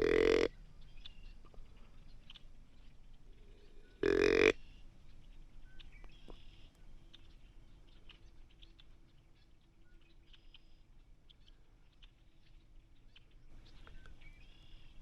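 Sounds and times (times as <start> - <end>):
buzzy deer call: 0.0 - 0.5, 4.0 - 4.6
faint ticks and chirps: 0.0 - 15.0.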